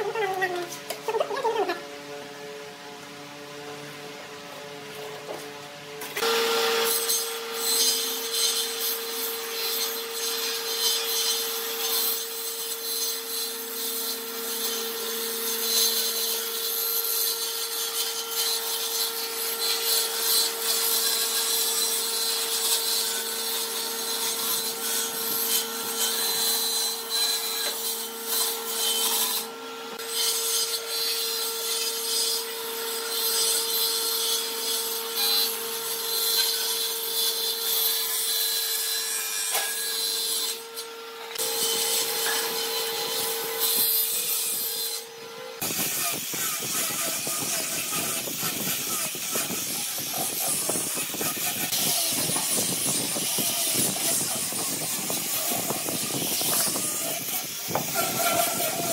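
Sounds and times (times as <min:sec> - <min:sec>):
power tool motor whine: 0:06.0 - 0:32.6, 0:39.5 - 0:58.9.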